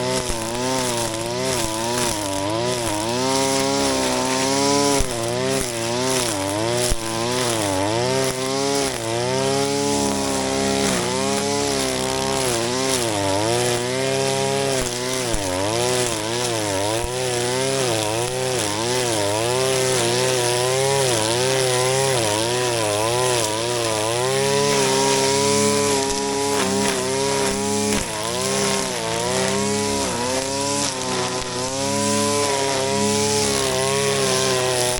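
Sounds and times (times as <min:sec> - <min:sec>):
brush cutter engine: 0:00.0 - 0:34.9.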